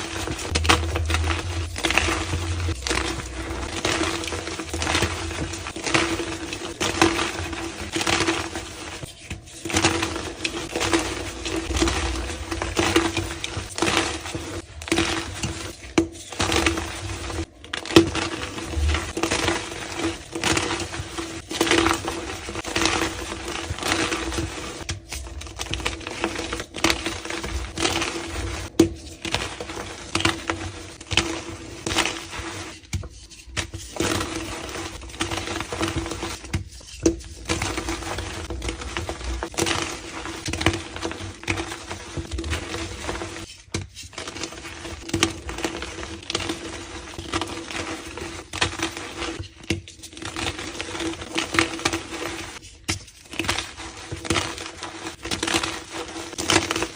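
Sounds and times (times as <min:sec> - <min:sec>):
chalk blocks crunching: 0:00.0 - 0:56.9.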